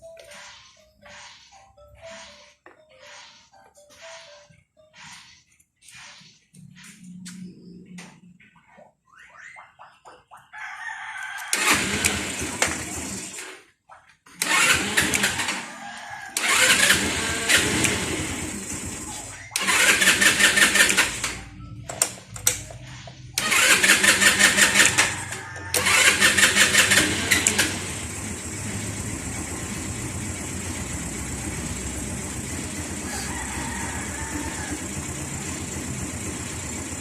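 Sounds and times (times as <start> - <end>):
scooter electric starter cranking: 11.4 - 13.6, 14.4 - 22.6, 23.4 - 37.0
scooter engine idling: 11.5 - 13.5, 14.4 - 37.0.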